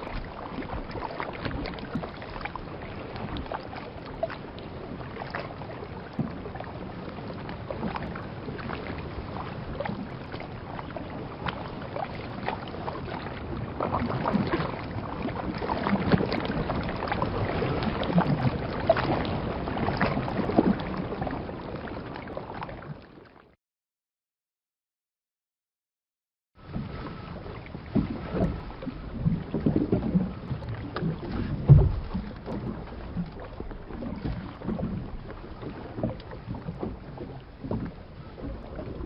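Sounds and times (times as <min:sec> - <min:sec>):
underwater bubbles gurgling: 0:00.0 - 0:23.4, 0:26.7 - 0:39.0.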